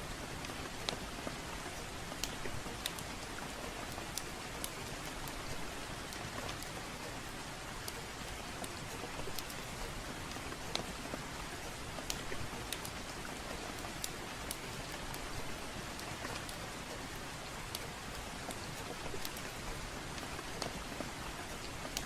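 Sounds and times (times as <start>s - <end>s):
steady rainfall: 0.0s - 22.0s
wood fire crackling: 0.2s - 22.0s.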